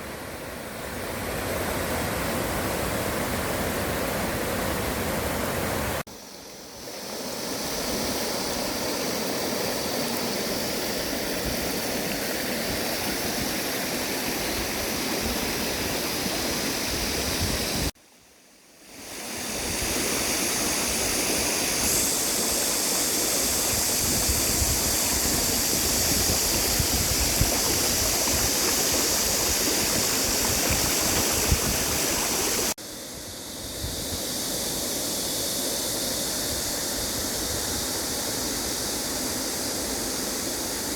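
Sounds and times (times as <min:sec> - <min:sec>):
stream rushing: 0:00.0 - 0:06.1, 0:06.8 - 0:17.9, 0:19.0 - 0:32.8.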